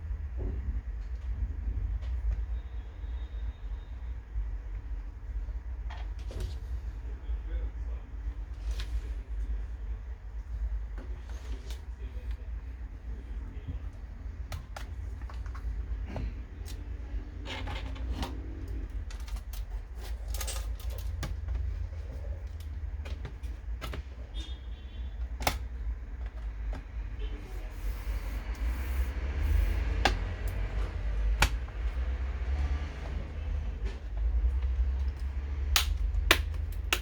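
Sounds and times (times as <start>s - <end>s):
plastic and metal parts clicking: 17.4s - 21.8s.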